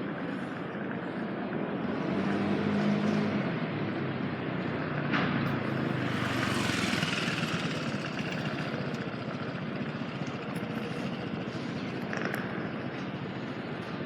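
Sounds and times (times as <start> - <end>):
steady traffic hum: 0.0 - 14.0
vehicle passing: 1.8 - 11.4.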